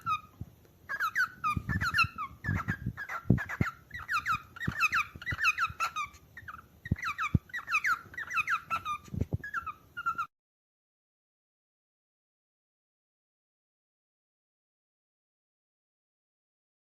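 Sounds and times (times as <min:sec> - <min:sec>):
cockatiel chirping whistles: 0:00.0 - 0:00.3, 0:00.9 - 0:10.3.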